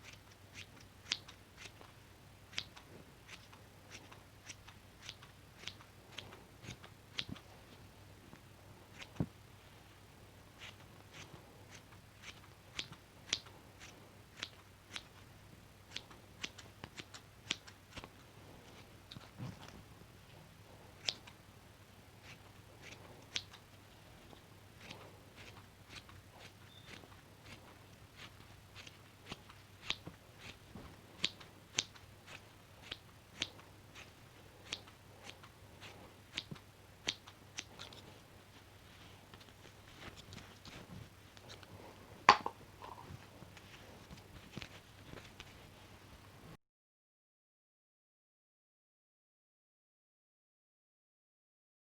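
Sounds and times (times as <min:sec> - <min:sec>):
scissors snipping: 0:02.5 - 0:07.5, 0:10.6 - 0:15.2, 0:21.0 - 0:21.4, 0:22.2 - 0:23.6, 0:24.8 - 0:30.6, 0:31.2 - 0:38.0.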